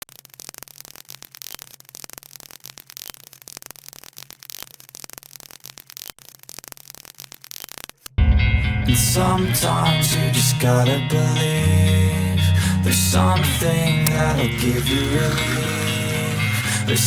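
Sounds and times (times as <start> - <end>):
crackling static: 0.0 - 8.8, 13.3 - 17.0
low hum: 8.2 - 17.0.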